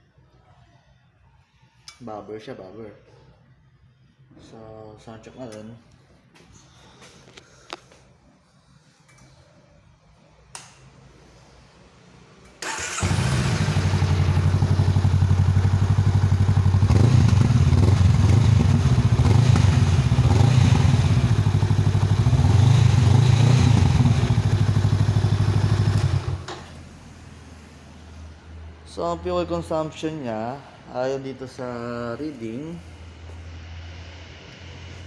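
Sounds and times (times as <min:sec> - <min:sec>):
motorcycle engine starting and idling: 0:12.5 - 0:26.9.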